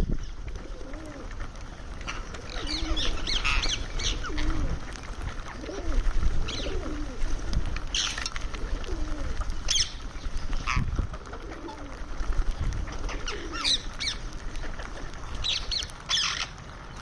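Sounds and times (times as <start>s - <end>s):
low cooing: 0.6s - 1.3s, 5.6s - 7.2s, 8.6s - 9.4s
parrot chirping and squawking: 2.1s - 4.2s, 15.4s - 16.6s.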